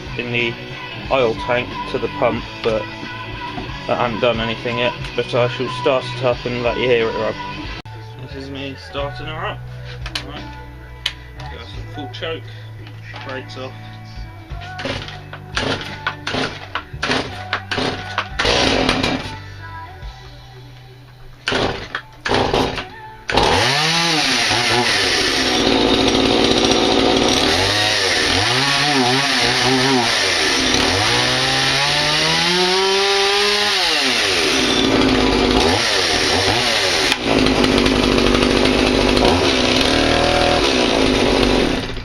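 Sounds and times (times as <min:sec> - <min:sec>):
chainsaw pull-start: 0:14.6 - 0:19.4, 0:21.4 - 0:42.0
chainsaw engine revving: 0:14.7 - 0:19.4, 0:21.4 - 0:42.0.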